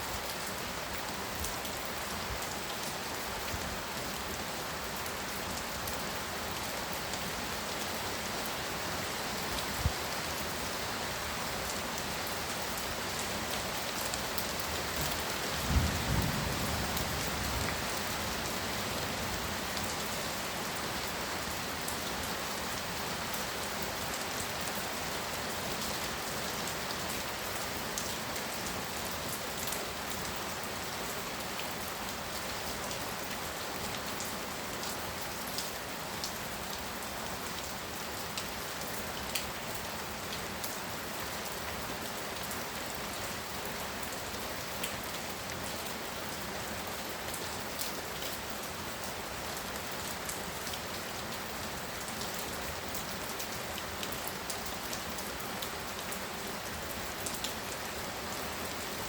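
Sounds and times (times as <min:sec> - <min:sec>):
heavy rain: 0:00.0 - 0:59.0.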